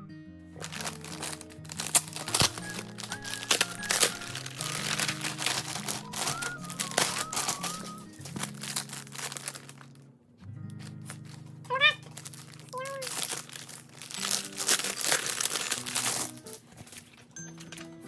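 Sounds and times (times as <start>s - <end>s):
background music with whistled tune: 0.0s - 8.6s, 17.3s - 18.0s
packaging crinkling: 0.6s - 10.1s, 10.7s - 17.6s.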